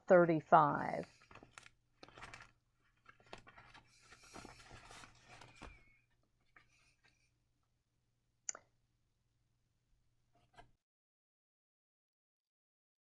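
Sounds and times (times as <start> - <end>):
soft rustle: 1.0 - 7.3.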